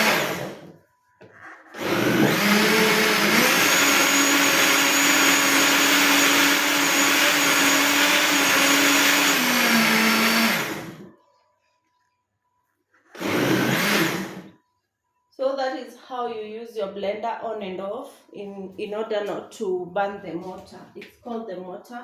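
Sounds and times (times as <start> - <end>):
electric blender blending fruit: 0.0 - 0.7, 1.4 - 11.1, 13.2 - 14.5.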